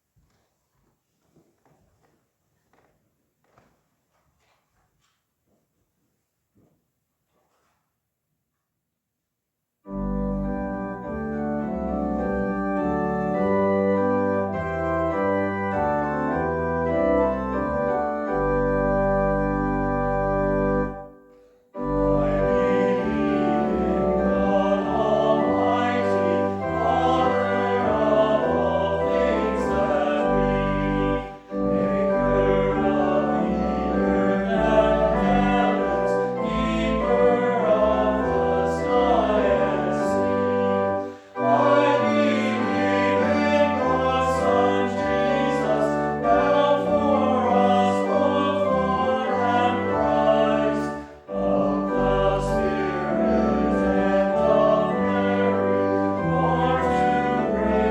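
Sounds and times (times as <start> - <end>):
organ accompaniment: 9.8 - 57.9
choir singing a hymn: 21.8 - 57.9.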